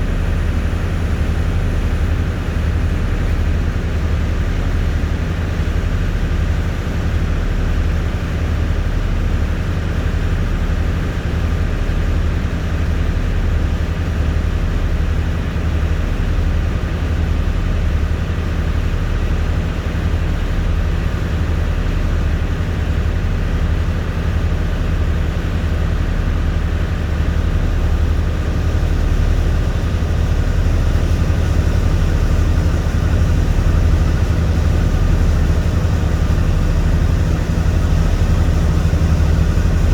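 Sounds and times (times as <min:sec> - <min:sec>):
boat engine throbbing: 0:27.0 - 0:39.9.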